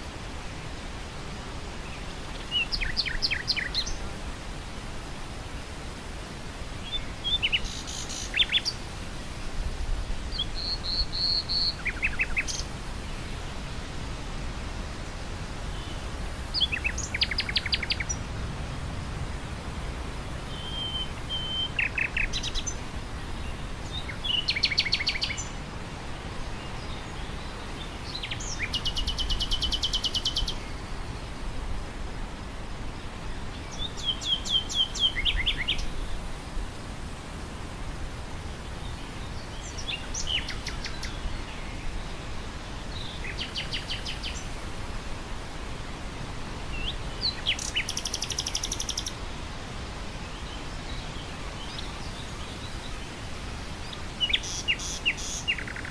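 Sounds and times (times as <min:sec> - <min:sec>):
wind through grass: 0:00.0 - 0:55.9
nightingale singing: 0:02.3 - 0:04.0, 0:06.8 - 0:08.8, 0:10.3 - 0:12.7, 0:16.6 - 0:18.2, 0:20.5 - 0:22.8, 0:23.5 - 0:25.6, 0:26.5 - 0:30.8, 0:33.5 - 0:36.0, 0:39.4 - 0:41.7, 0:42.9 - 0:44.6, 0:46.7 - 0:49.2, 0:53.9 - 0:55.9.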